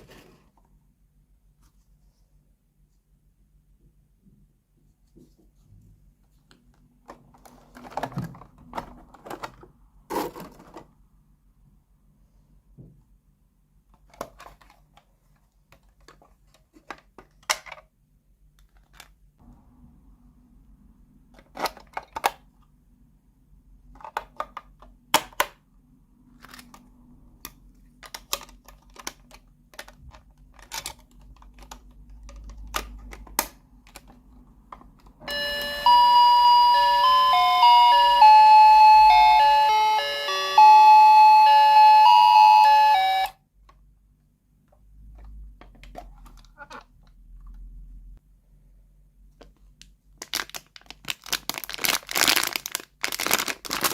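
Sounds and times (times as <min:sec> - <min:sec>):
electronic beeping melody: 0:35.3 - 0:43.3.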